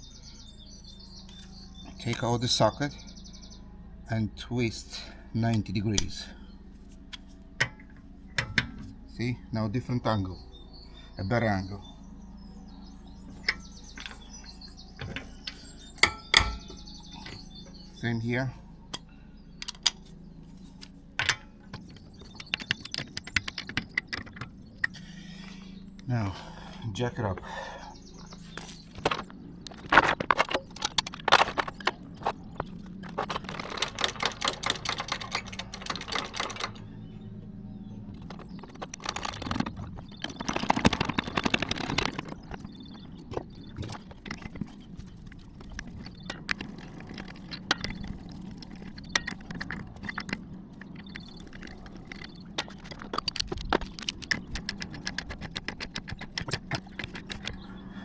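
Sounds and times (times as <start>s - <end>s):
car jack scraping: 4.9s - 9.0s, 12.9s - 57.8s
car jack clicking: 7.1s - 9.0s, 13.2s - 17.8s, 20.8s - 25.8s, 28.0s - 57.7s.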